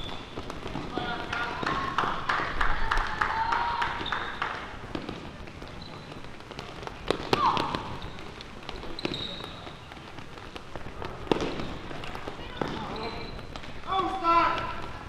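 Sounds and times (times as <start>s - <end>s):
distant shouts: 0.0s - 4.9s, 7.1s - 9.9s, 11.1s - 15.0s.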